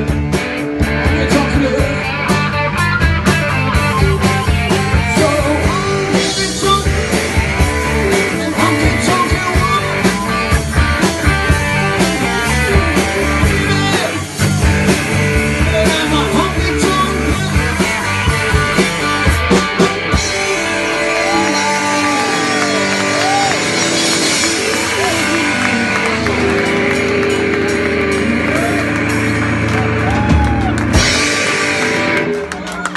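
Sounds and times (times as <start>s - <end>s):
drum kit steady beat: 0.0s - 32.7s
rock guitar with bent notes: 0.0s - 32.9s.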